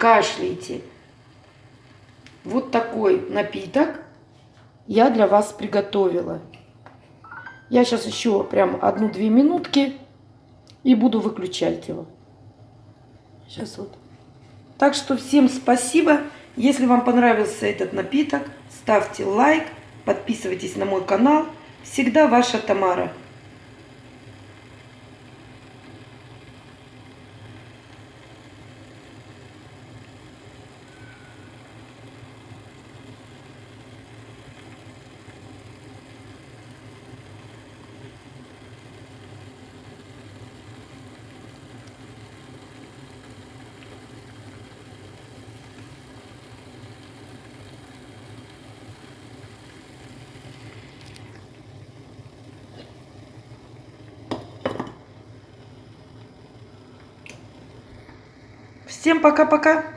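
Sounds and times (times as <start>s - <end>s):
pot boiling rumble: 0.0s - 59.9s.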